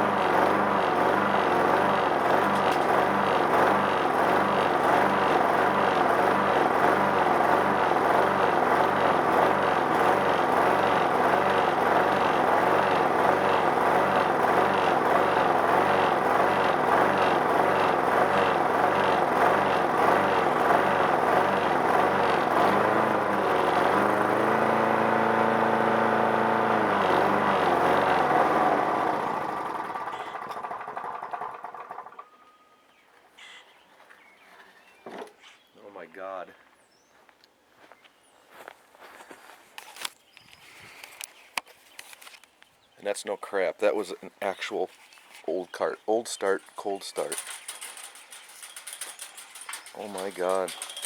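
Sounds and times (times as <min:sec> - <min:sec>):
lawnmower engine running: 0:00.0 - 0:32.6, 0:45.5 - 0:51.0.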